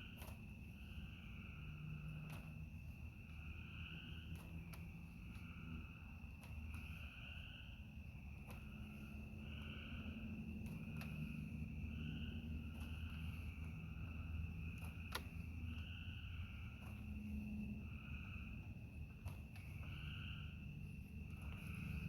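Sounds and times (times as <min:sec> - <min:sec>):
crickets trilling: 0:00.0 - 0:22.0
low steady hum: 0:00.0 - 0:22.0
faint clicks: 0:14.6 - 0:15.9.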